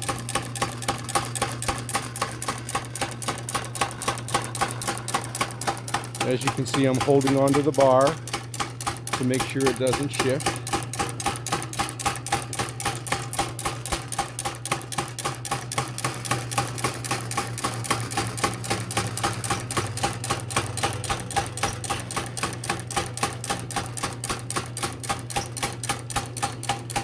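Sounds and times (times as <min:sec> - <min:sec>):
electric motor hum: 0:00.0 - 0:12.2.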